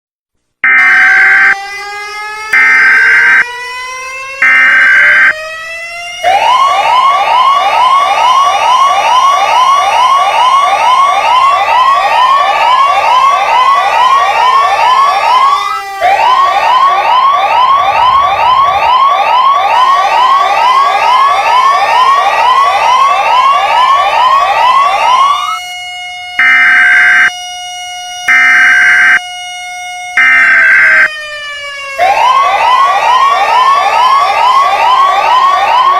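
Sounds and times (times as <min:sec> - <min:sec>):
loud alarm beeps: 0:00.6 - 0:01.6, 0:02.5 - 0:03.5, 0:04.4 - 0:05.4, 0:12.7 - 0:25.6, 0:26.4 - 0:27.4, 0:28.2 - 0:29.3, 0:30.2 - 0:31.1
siren tone: 0:00.6 - 0:35.9
rapid rising electronic chirps: 0:04.4 - 0:05.3, 0:16.4 - 0:21.4, 0:26.4 - 0:27.3, 0:28.3 - 0:29.2, 0:30.2 - 0:31.1.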